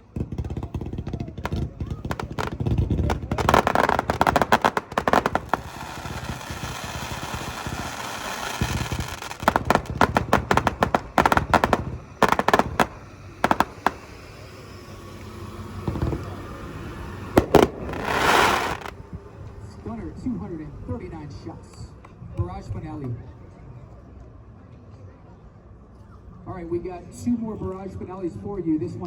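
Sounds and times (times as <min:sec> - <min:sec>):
firework volleys of sharp shots: 0:00.0 - 0:19.3
firework crackling hiss: 0:00.9 - 0:19.3.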